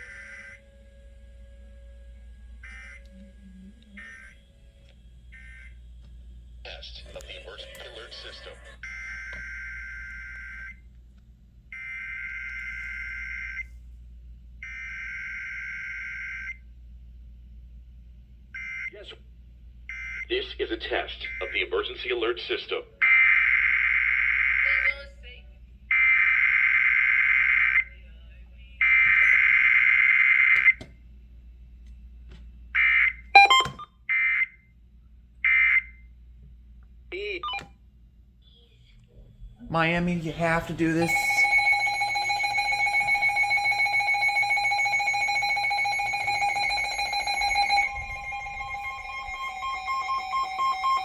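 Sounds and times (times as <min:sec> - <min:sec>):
loud ringing tone: 0:33.4 - 0:33.8, 0:40.4 - 0:51.0
warbling beep: 0:33.4 - 0:33.8, 0:41.0 - 0:51.0.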